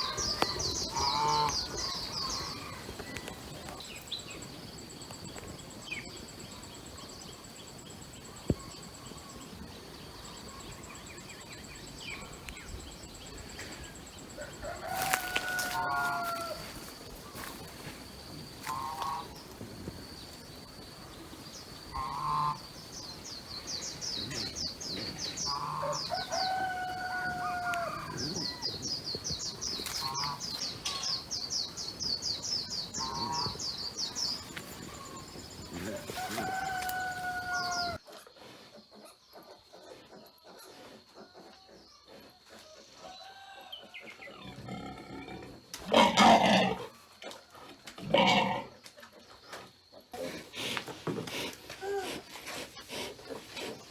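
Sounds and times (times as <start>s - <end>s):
roosters crowing: 0.0s - 3.5s, 14.3s - 17.0s, 25.4s - 29.0s, 35.0s - 38.0s, 45.9s - 46.8s, 48.0s - 48.7s.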